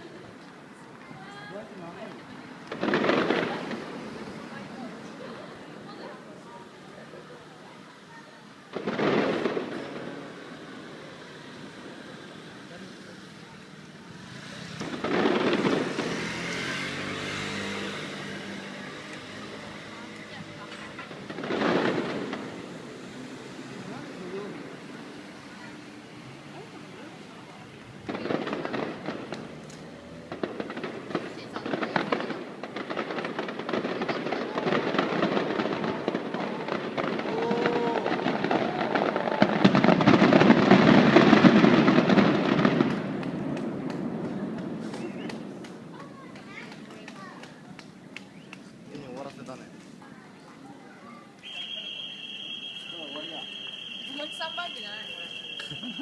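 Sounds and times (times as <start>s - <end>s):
fireworks booming and rumbling: 1.1s - 49.8s, 51.5s - 56.0s.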